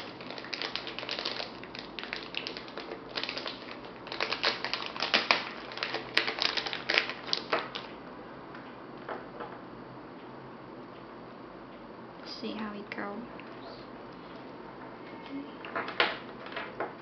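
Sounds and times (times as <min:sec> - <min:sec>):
charging cable crinkling and clicking: 0:00.0 - 0:07.9.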